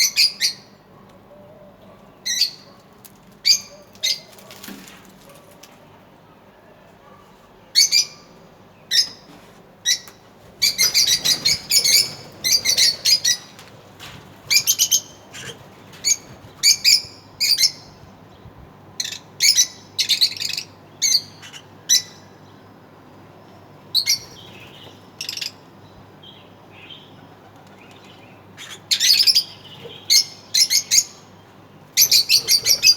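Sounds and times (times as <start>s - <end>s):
lovebirds chirping: 7.6s - 22.7s, 23.4s - 32.9s.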